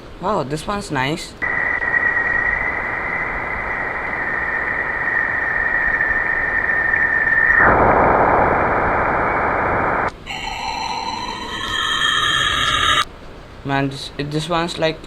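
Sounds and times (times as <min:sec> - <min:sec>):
high whistle-like tone: 0:01.4 - 0:13.1
steady hiss: 0:01.4 - 0:13.1.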